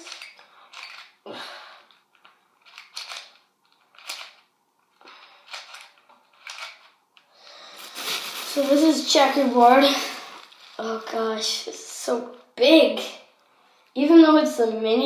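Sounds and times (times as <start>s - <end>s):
puzzle cube clacking: 0.0s - 1.3s, 1.9s - 7.2s.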